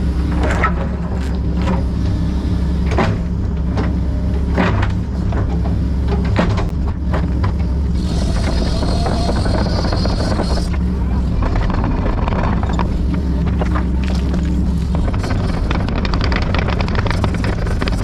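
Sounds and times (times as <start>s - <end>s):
excavator diesel engine running: 0.0s - 18.0s
knocks and scrapes: 8.0s - 18.0s.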